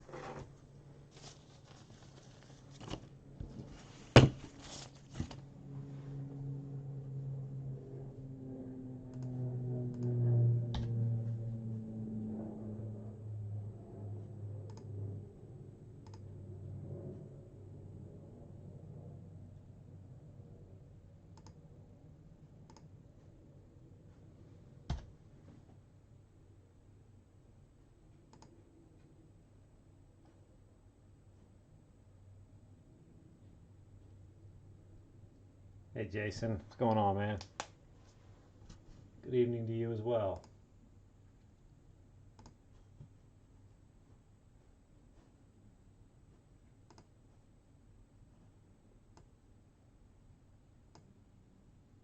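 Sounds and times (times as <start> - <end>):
handling rustles and knocks: 0.0 - 5.4
low steady hum: 0.0 - 52.0
small double clicks: 28.3 - 28.6, 42.4 - 42.6.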